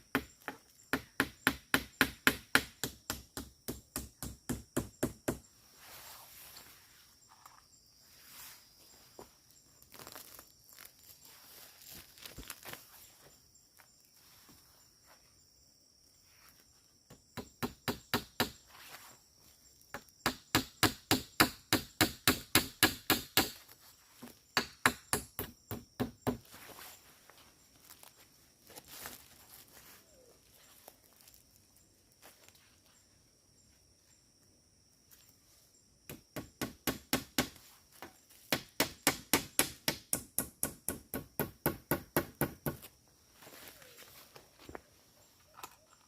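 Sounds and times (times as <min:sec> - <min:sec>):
tool striking wood: 0:19.9 - 0:23.6, 0:38.5 - 0:42.8.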